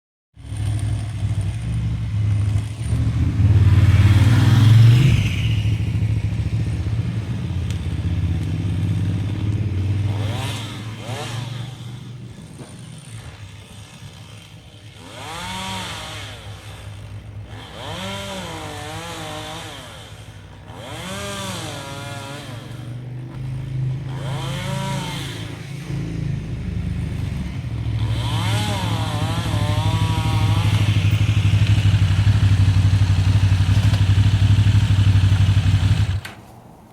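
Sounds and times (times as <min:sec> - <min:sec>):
chainsaw engine revving: 0:00.4 - 0:36.4
low engine hum: 0:22.5 - 0:36.9.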